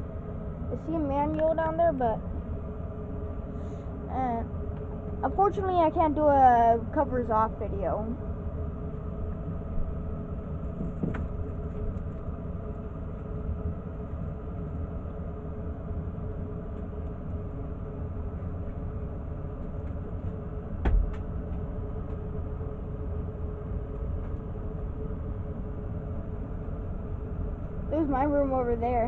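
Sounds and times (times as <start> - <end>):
gas furnace rumbling: 0.0 - 29.0
loud thump: 20.8 - 21.2.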